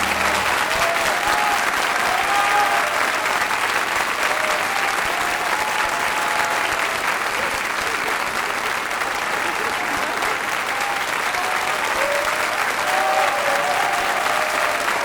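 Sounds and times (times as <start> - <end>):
audience applauding: 0.0 - 15.0.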